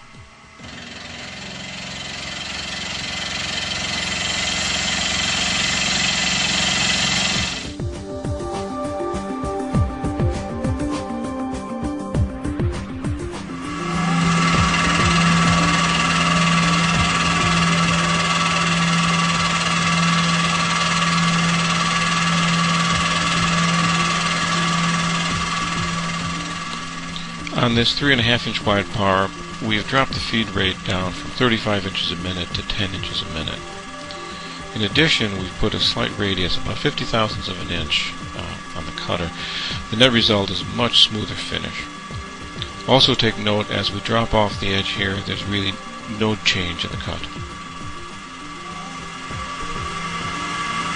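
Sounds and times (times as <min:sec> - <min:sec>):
mill spindle hum: 0:00.0 - 0:50.9
high hiss of metal cutting: 0:13.3 - 0:50.9.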